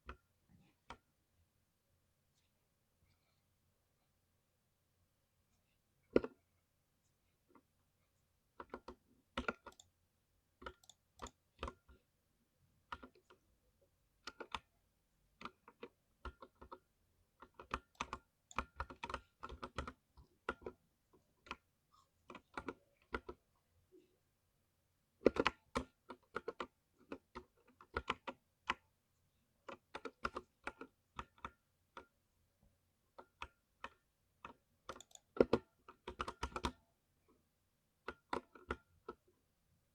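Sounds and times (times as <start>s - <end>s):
mechanical keyboard typing: 17.4s - 20.8s, 33.2s - 36.8s.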